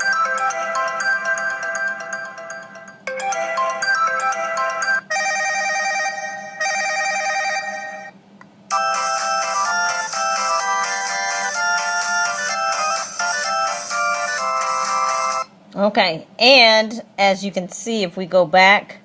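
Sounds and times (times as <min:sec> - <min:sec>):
busier ringtone tune: 0:00.0 - 0:15.5
melodic phone ringtone: 0:00.0 - 0:15.5
trilling phone ring: 0:00.0 - 0:15.5.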